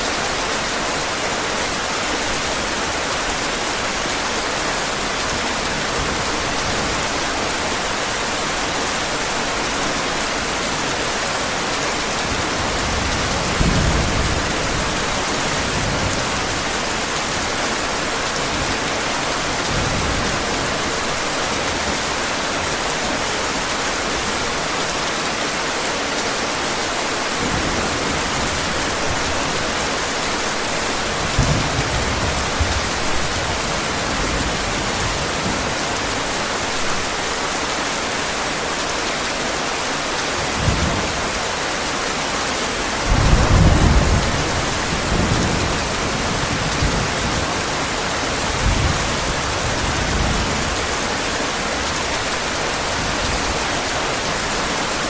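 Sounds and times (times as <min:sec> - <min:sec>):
heavy rain falling: 0:00.0 - 0:55.0
low rumbles of thunder: 0:43.1 - 0:47.5.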